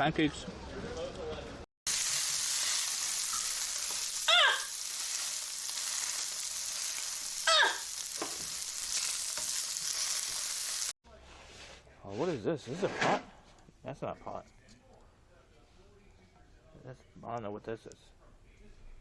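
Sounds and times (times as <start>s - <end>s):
food sizzling in a pan: 1.9s - 11.0s.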